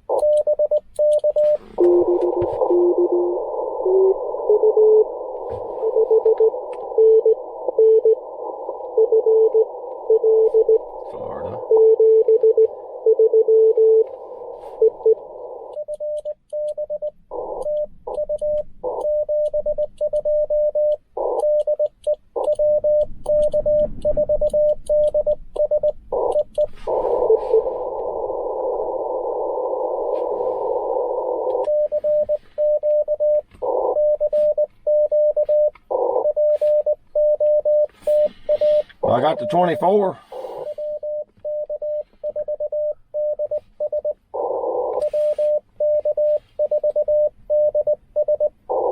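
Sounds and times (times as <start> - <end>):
morse code sidetone: 0.1 - 11.0, 11.6 - 48.9
radio receiver hiss: 14.0 - 15.8, 26.1 - 32.8, 37.7 - 41.0, 44.4 - 46.7
faint morse code station: 14.7 - 27.7, 30.9 - 48.9.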